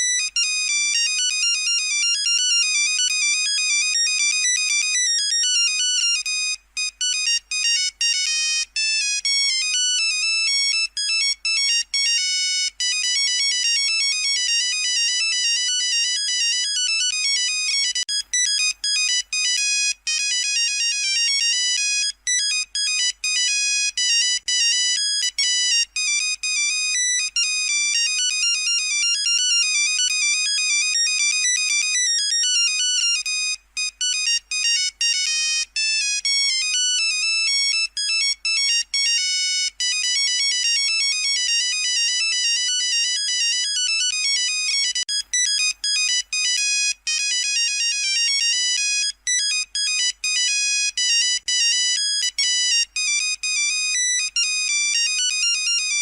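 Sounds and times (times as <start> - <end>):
monophonic ringtone beeping melody: 0.0 - 56.0.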